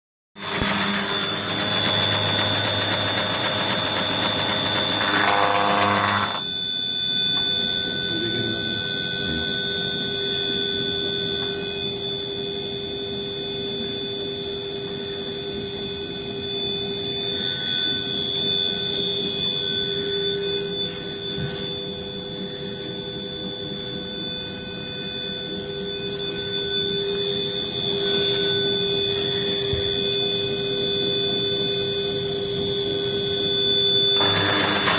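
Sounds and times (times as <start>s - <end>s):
sanding machine rough noise: 0.4s - 6.4s, 34.1s - 34.9s
machine hum and whine: 0.4s - 34.9s.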